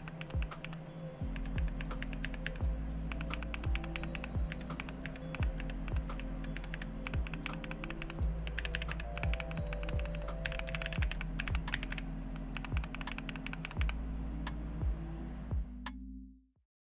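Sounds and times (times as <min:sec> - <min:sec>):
mechanical keyboard typing: 0:00.0 - 0:12.0
background music with bass beat: 0:00.0 - 0:16.3.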